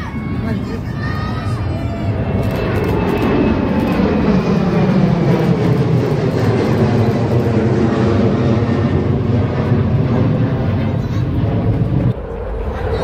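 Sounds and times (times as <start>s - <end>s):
jet aircraft taking off: 0.0s - 13.0s.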